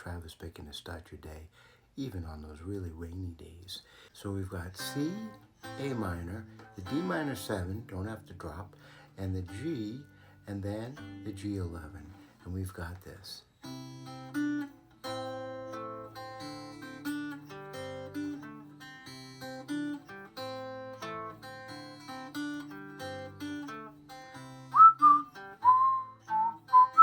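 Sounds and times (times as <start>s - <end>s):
fingerpicked acoustic guitar: 4.4s - 27.0s
person whistling a melody: 24.7s - 27.0s.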